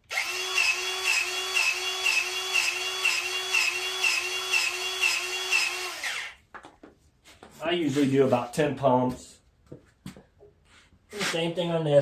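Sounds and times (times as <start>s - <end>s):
powered grease gun pulsing: 0.0s - 6.4s.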